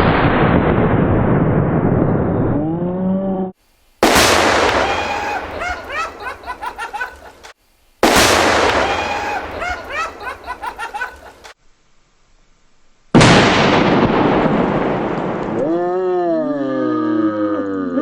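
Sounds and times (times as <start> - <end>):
explosion boom with rolling echo: 0.0 - 2.8, 4.0 - 5.9, 8.0 - 9.9, 13.2 - 15.7.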